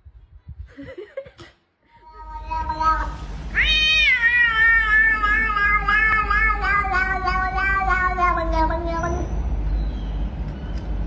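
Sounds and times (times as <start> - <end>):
cat meowing: 2.0 - 9.3.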